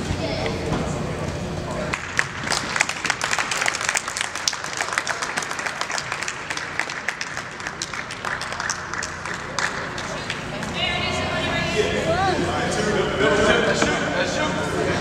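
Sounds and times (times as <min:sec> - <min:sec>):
spectators clapping: 0:01.9 - 0:10.8.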